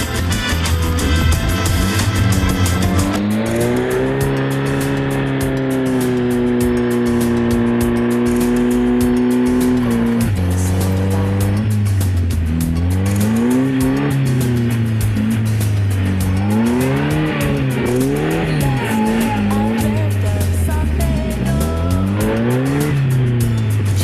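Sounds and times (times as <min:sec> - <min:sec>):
music with a steady beat: 0:00.0 - 0:24.0
off-road vehicle engine revving: 0:00.0 - 0:24.0.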